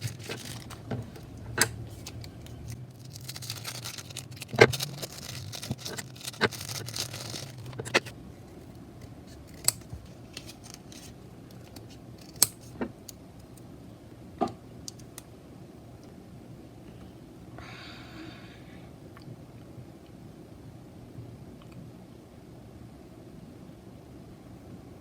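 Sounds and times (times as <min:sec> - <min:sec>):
packaging rustling: 0:00.0 - 0:12.8.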